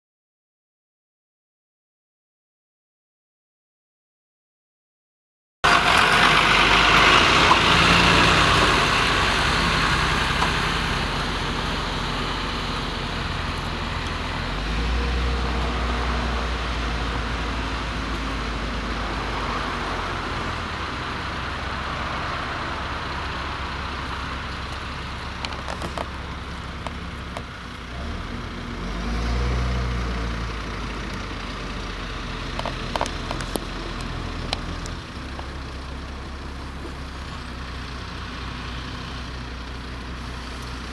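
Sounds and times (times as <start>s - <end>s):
fire engine humming: 5.6s - 40.9s.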